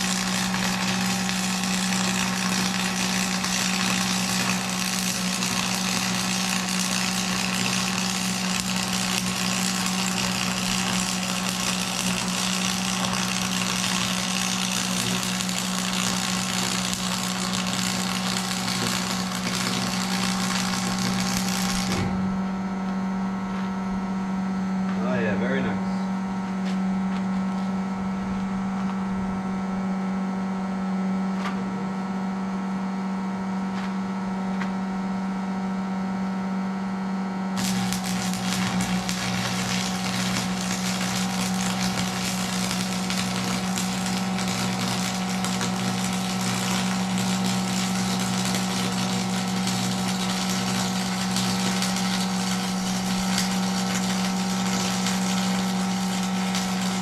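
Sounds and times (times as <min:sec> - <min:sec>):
welding arc crackling hiss: 0:00.0 - 0:22.3, 0:37.6 - 0:57.0
electrical hum: 0:00.0 - 0:57.0.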